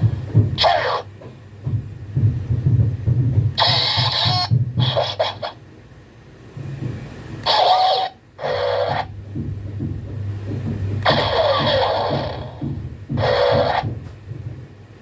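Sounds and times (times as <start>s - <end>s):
toy motor hum: 3.6s - 5.6s, 7.4s - 9.1s.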